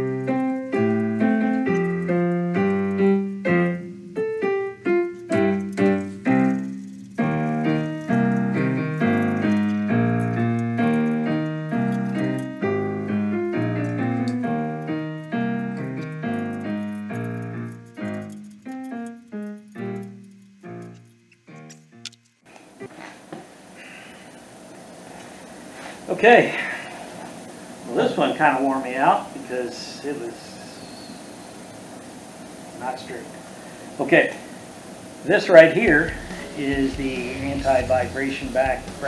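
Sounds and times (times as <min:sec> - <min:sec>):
piano music: 0:00.0 - 0:22.1, 0:35.9 - 0:39.0.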